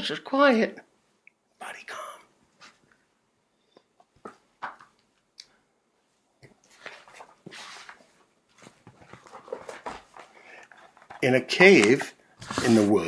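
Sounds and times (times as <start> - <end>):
close-up clicks and rustles: 8.6 - 13.0.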